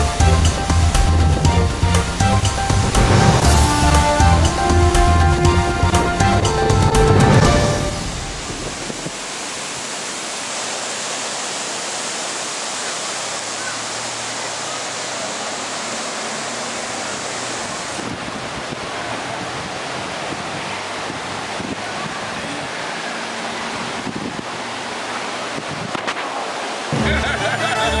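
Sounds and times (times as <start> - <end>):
river floodwater rushing: 0.0 - 28.0.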